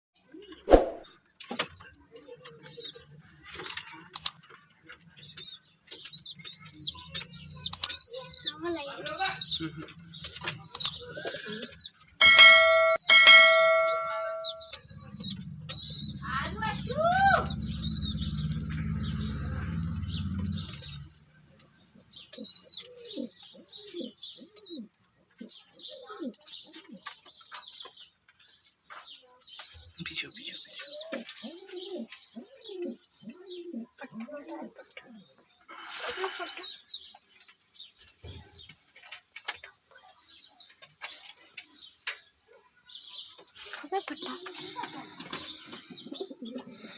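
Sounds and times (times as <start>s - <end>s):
small birds chirping: 0.2s - 46.9s
sharp clicks: 4.1s - 4.5s, 7.2s - 8.3s, 10.3s - 11.1s
pigeons cooing: 5.2s - 27.2s, 29.8s - 37.1s, 43.6s - 46.9s
steady low rumble: 15.0s - 21.2s.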